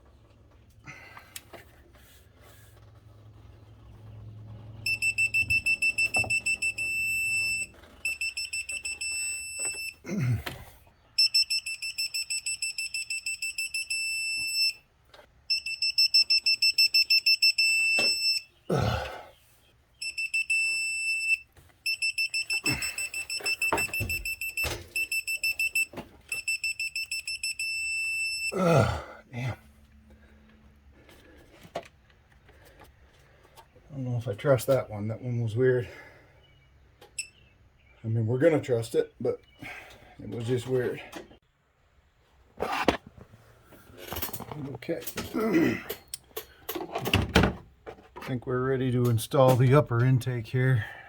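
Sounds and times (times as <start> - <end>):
torque wrench beeping rapidly: 4.9 - 9.9, 15.5 - 18.4.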